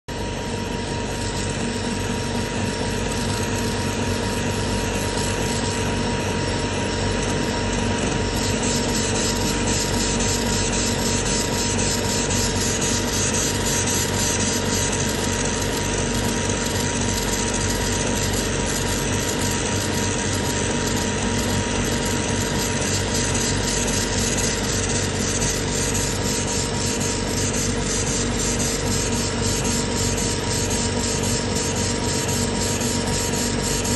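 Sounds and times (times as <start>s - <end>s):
steady hum: 0.2s - 15.7s
laser engraver head moving: 7.2s - 15.4s, 19.4s - 33.9s.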